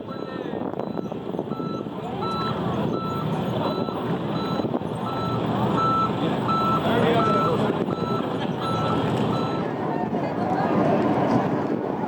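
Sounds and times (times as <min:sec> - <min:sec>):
reversing alarm beeping: 0:00.0 - 0:09.7
steady background noise: 0:00.0 - 0:12.0.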